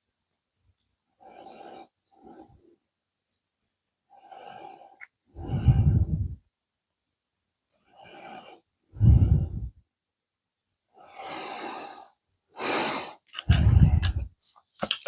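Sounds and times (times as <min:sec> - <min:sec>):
person breathing out: 0:05.4 - 0:06.4, 0:09.0 - 0:09.7, 0:11.2 - 0:14.3.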